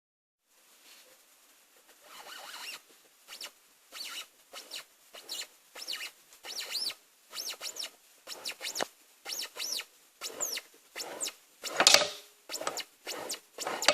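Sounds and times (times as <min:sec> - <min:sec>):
scooter high-pitched squeaks: 0:02.1 - 0:13.9.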